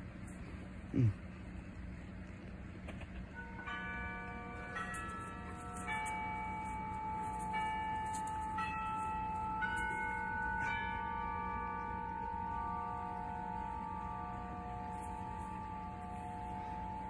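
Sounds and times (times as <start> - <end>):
doorbell chime tune: 3.4 - 17.0.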